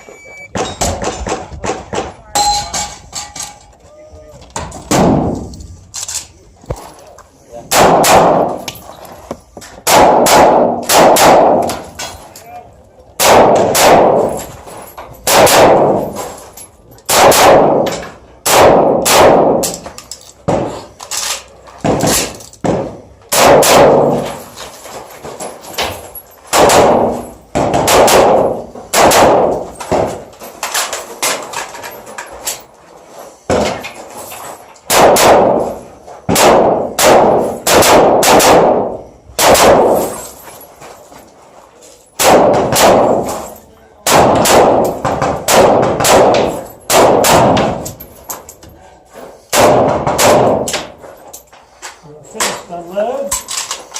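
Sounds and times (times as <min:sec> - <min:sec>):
rifle shots: 0:04.9 - 0:05.5, 0:07.7 - 0:08.7, 0:09.8 - 0:12.0, 0:13.2 - 0:14.5, 0:15.2 - 0:16.2, 0:17.1 - 0:19.9, 0:21.8 - 0:24.6, 0:26.5 - 0:31.6, 0:34.9 - 0:40.2, 0:42.2 - 0:48.0, 0:49.5 - 0:50.9.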